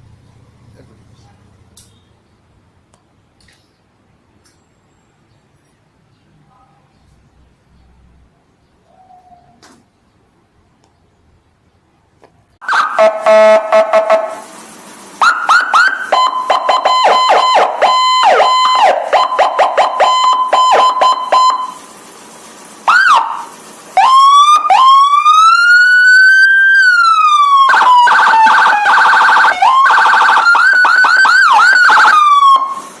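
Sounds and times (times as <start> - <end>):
electronic siren cycling tones: 12.6 - 14.4, 15.2 - 21.8, 22.9 - 32.8.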